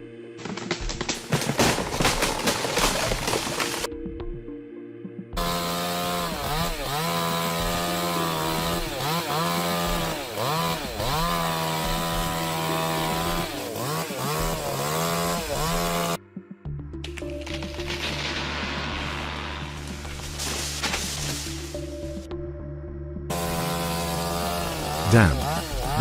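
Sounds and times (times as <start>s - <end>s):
chainsaw running at high revs: 5.4s - 16.2s, 23.3s - 26.0s.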